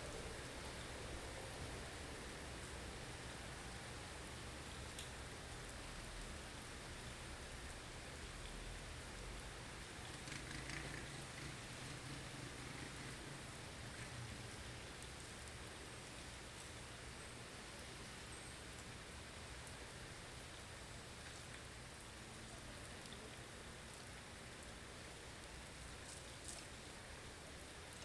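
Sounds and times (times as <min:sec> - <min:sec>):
faint ticks: 0:04.9 - 0:06.7, 0:09.2 - 0:14.3, 0:22.4 - 0:24.0, 0:25.4 - 0:27.0.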